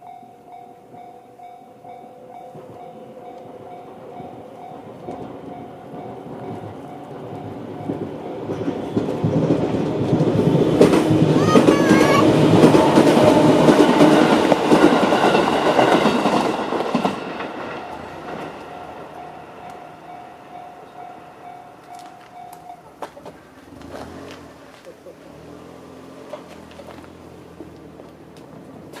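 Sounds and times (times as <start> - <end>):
crossing warning bell ringing: 0.0 - 23.1
electric train passing: 0.0 - 29.0.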